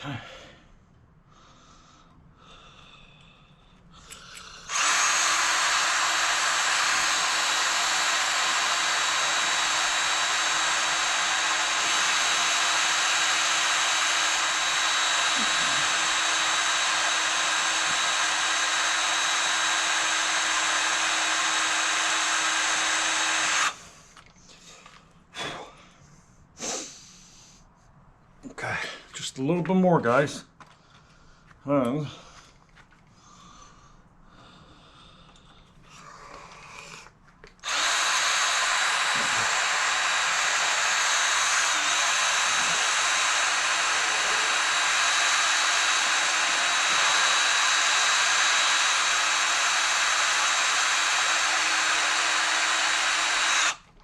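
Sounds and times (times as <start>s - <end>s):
electric drill running: 4.7s - 23.8s, 37.6s - 53.9s.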